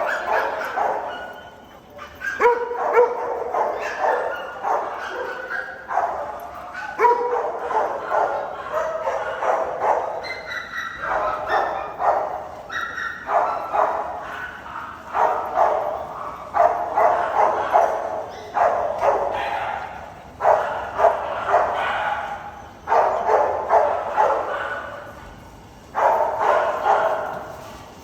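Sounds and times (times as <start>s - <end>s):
dogs barking and yipping: 0.0s - 28.0s.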